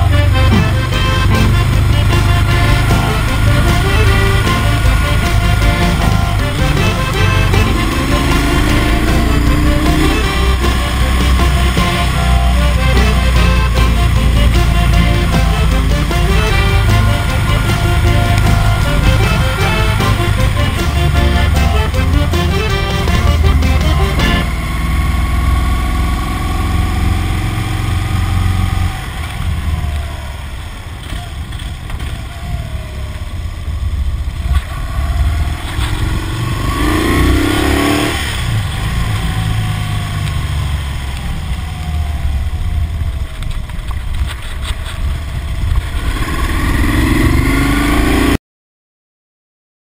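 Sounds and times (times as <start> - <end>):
motorcycle engine revving: 0.0 - 48.4.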